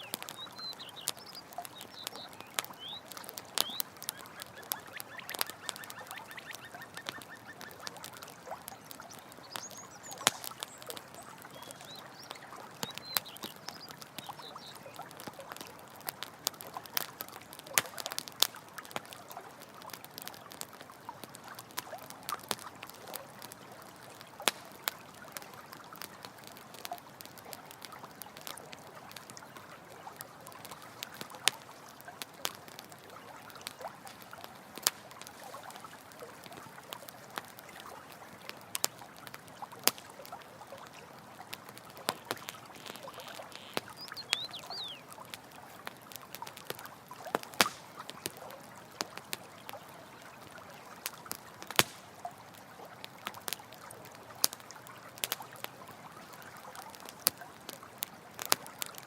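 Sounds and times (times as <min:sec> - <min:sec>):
campfire crackling and popping: 0:00.0 - 0:59.0
stream trickling: 0:00.0 - 0:59.0
high chirp: 0:42.8 - 0:45.0.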